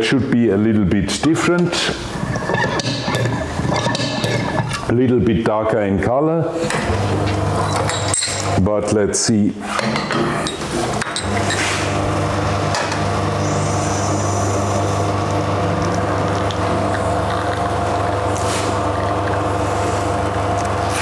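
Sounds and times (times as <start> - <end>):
espresso machine pump humming: 2.0 - 4.9, 6.8 - 8.6, 11.0 - 21.0.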